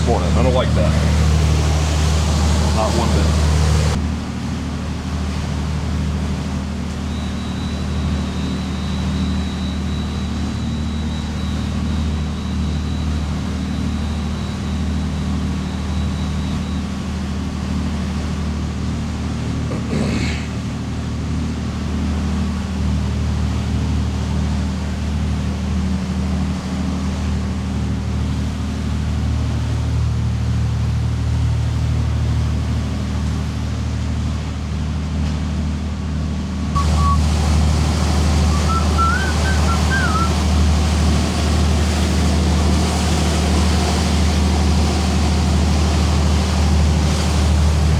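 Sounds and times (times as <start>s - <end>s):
boat diesel engines droning: 0.0s - 47.9s
faint high steady tone: 36.8s - 40.4s.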